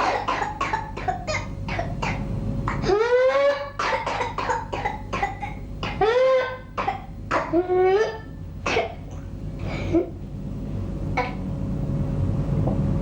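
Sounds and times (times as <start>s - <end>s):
rapid short coughs: 0.0s - 10.2s.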